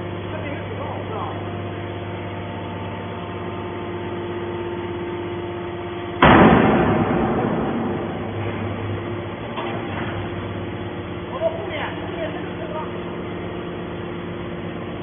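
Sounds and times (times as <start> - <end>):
hydraulic power unit humming: 0.0 - 15.0
loud metal crash: 6.2 - 9.4.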